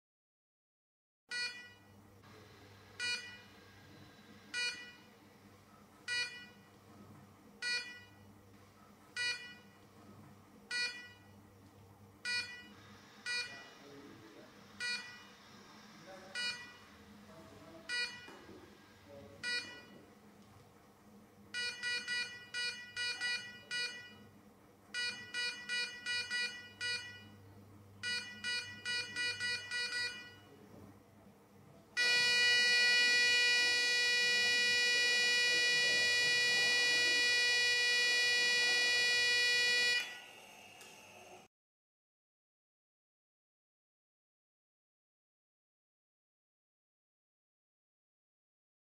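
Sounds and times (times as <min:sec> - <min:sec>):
heart monitor beeping: 0:01.3 - 0:01.9, 0:02.8 - 0:05.1, 0:05.8 - 0:06.8, 0:07.6 - 0:08.3, 0:09.1 - 0:09.8, 0:10.7 - 0:11.4, 0:12.2 - 0:13.9, 0:14.7 - 0:17.0, 0:17.8 - 0:20.1, 0:21.5 - 0:24.3, 0:25.0 - 0:27.4, 0:28.0 - 0:30.5, 0:32.0 - 0:40.3.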